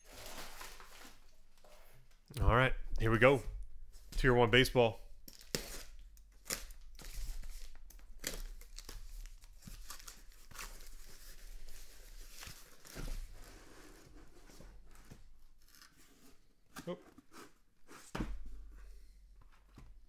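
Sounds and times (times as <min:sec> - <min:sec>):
packaging tearing and rustling: 0:00.0 - 0:01.5, 0:05.3 - 0:13.2.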